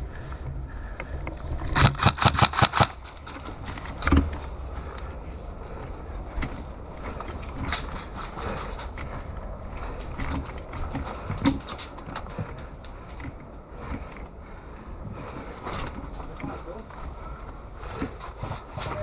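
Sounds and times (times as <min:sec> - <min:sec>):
airsoft gun rapid shots: 0:01.8 - 0:03.0.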